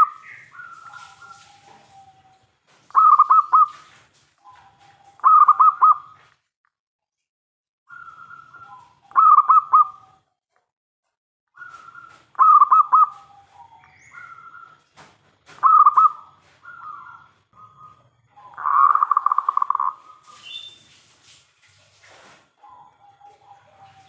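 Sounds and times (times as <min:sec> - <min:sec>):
dove cooing: 0:00.0 - 0:06.3, 0:07.9 - 0:10.2, 0:11.6 - 0:14.8, 0:15.5 - 0:20.4, 0:22.6 - 0:24.0.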